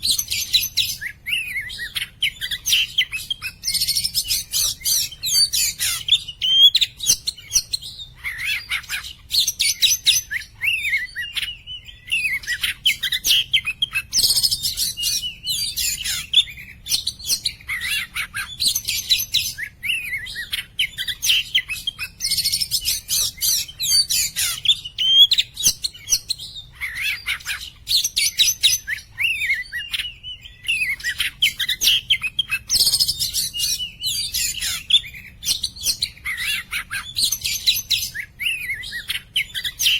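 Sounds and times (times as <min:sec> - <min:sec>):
bird singing whistles and chirps: 0:00.0 - 0:39.9.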